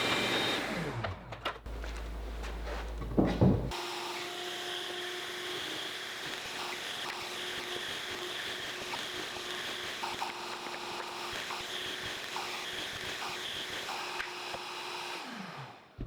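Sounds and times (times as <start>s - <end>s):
workshop machine humming: 0.0s - 11.4s
wood knocks: 3.0s - 3.7s.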